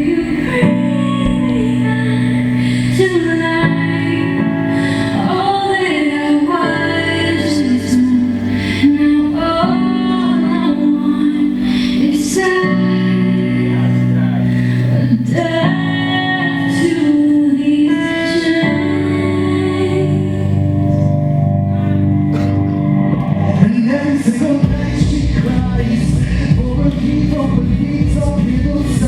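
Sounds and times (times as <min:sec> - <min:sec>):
heavy bass: 0:00.0 - 0:05.3, 0:20.4 - 0:29.0
music with held chords: 0:00.0 - 0:29.0
person singing: 0:00.0 - 0:29.0.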